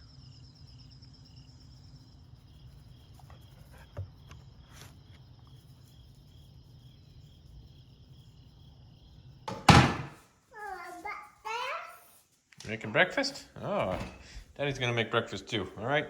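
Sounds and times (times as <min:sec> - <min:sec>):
insects chirping: 0:00.0 - 0:16.0
loud knock: 0:09.5 - 0:10.2.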